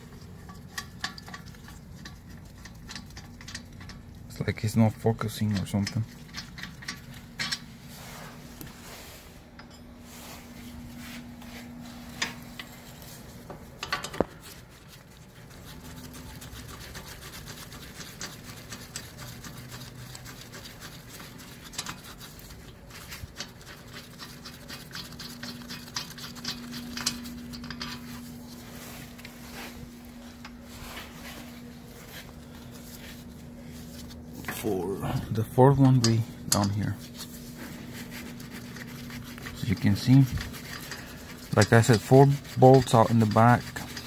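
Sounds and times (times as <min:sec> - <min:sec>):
hand tools clinking on metal: 0:34.4 - 0:37.0.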